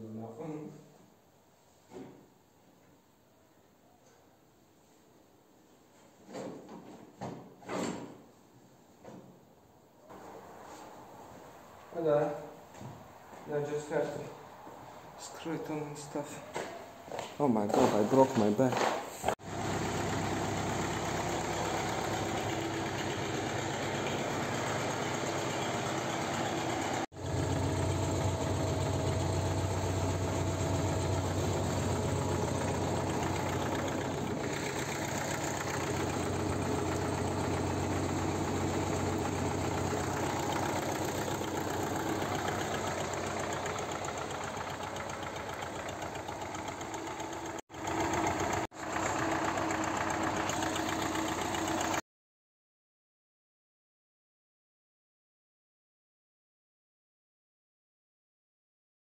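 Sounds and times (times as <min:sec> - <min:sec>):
tractor diesel engine idling: 0:19.4 - 0:52.0.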